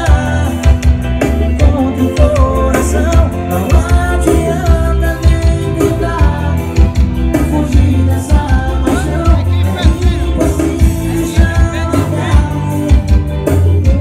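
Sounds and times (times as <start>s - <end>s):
loud music with singing and bass: 0.0s - 14.0s.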